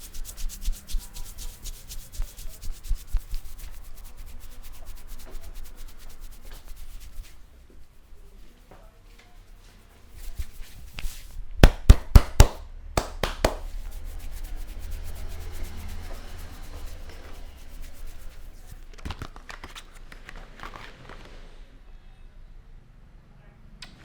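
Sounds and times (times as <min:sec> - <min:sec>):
hands rubbing scalp and hair: 0:00.0 - 0:21.2
hands slapping head: 0:11.0 - 0:13.8.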